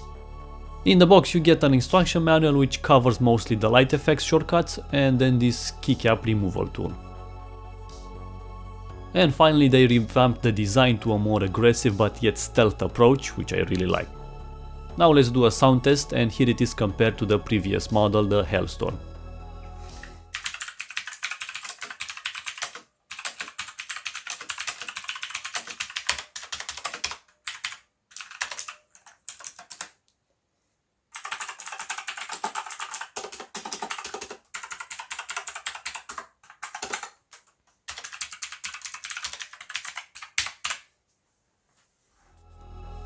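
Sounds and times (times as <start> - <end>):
clicky mechanical keyboard typing: 20.3 - 30.0, 31.2 - 40.8.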